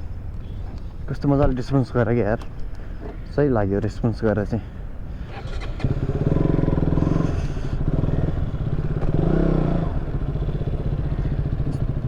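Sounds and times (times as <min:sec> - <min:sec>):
motorcycle engine running: 0:05.5 - 0:12.0.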